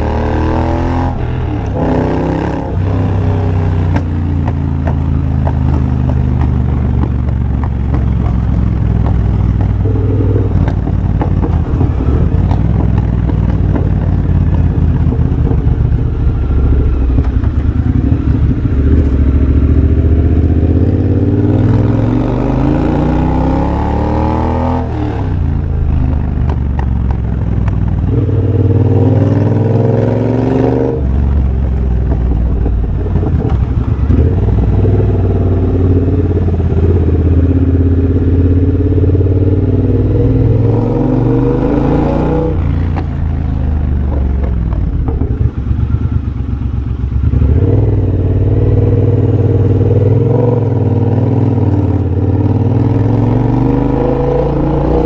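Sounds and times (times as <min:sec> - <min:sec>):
exhaust crackling and popping: 0:00.0 - 0:21.1, 0:24.8 - 0:28.3, 0:31.0 - 0:39.2, 0:39.8 - 0:47.4
motorcycle engine revving: 0:00.0 - 0:55.0.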